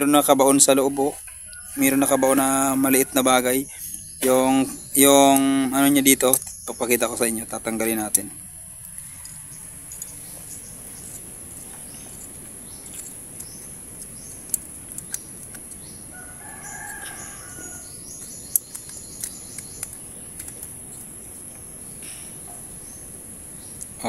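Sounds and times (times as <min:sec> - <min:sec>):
steady high hiss: 0:00.0 - 0:24.0
rooster crowing: 0:01.0 - 0:03.8, 0:16.1 - 0:18.1
small tools clicking: 0:12.8 - 0:15.9, 0:18.2 - 0:20.7.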